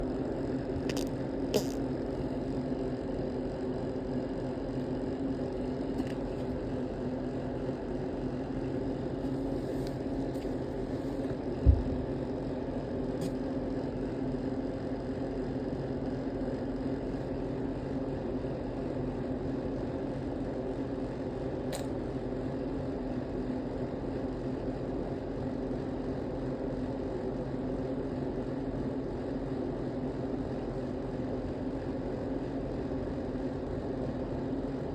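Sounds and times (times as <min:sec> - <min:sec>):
low mechanical hum: 0:00.0 - 0:34.9
short low thump: 0:11.6 - 0:12.0.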